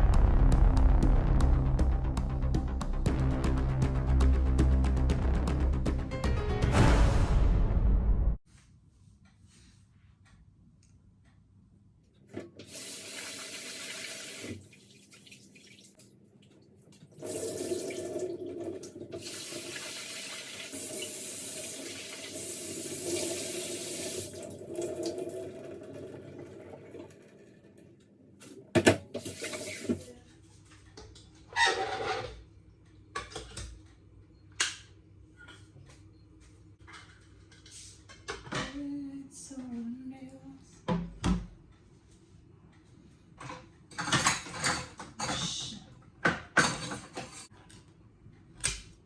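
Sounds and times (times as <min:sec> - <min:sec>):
water running from tap into sink: 0:12.6 - 0:16.0, 0:17.2 - 0:27.8, 0:29.0 - 0:30.1.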